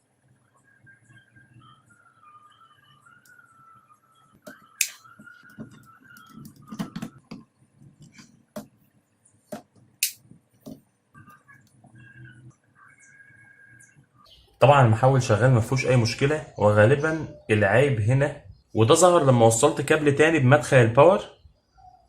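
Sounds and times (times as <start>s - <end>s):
faint steady high tone: 0.0s - 7.2s, 11.1s - 18.7s.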